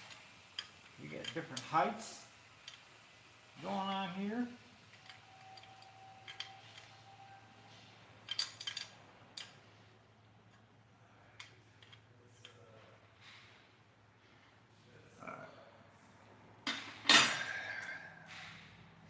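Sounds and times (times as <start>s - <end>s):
metal tools clicking and tapping: 0.0s - 1.8s, 2.6s - 2.9s, 4.9s - 9.6s, 11.4s - 12.7s
faint steady hum: 0.0s - 19.0s.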